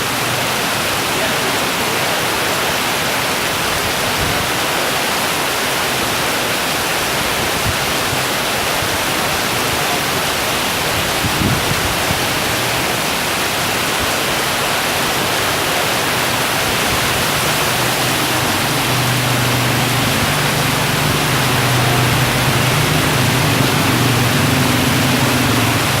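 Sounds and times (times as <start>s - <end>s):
heavy rain with wind: 0.0s - 26.0s.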